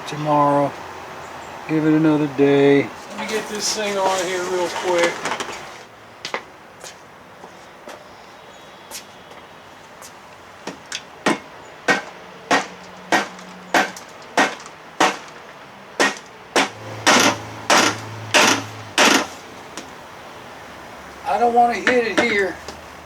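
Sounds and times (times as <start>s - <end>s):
hammer striking metal: 11.3s - 15.3s, 16.0s - 19.4s.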